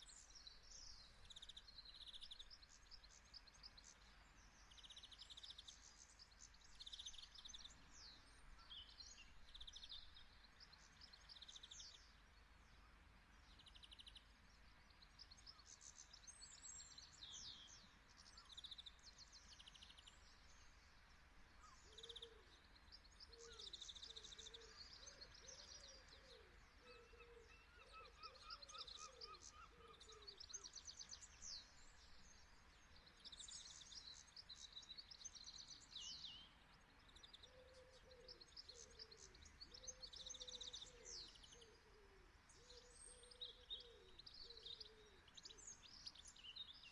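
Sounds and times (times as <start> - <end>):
small birds chirping: 0.0 - 46.9
low repeated bird call: 23.2 - 31.4.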